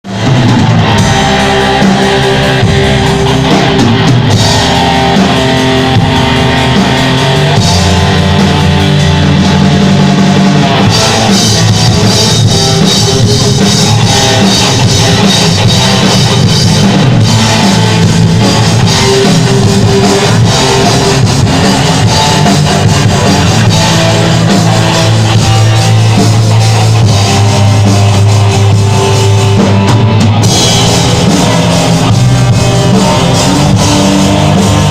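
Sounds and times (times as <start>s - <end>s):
rock band playing live: 0.0s - 34.9s.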